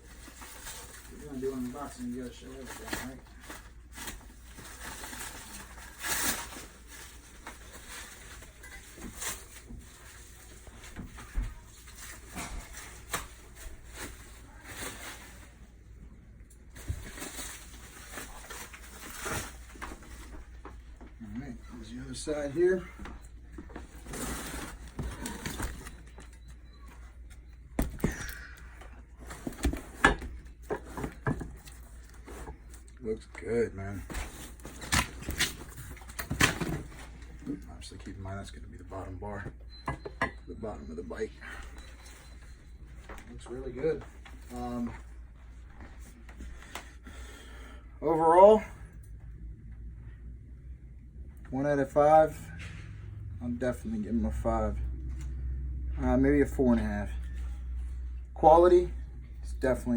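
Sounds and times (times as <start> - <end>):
packaging rustling and crinkling: 0.0 - 15.6, 16.6 - 20.9, 23.6 - 26.5, 33.9 - 37.6
packaging rustling: 16.7 - 20.6.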